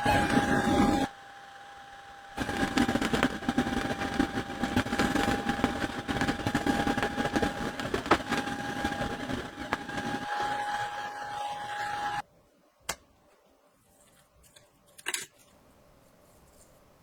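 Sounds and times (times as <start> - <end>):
small machine whining: 0.0 - 12.2.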